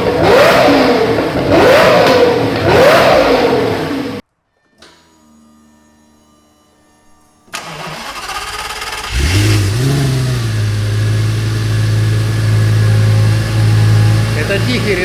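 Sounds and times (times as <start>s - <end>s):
car engine cranking: 0.0s - 4.2s, 7.5s - 15.0s
car engine revving and idling: 0.0s - 4.2s, 8.0s - 15.0s.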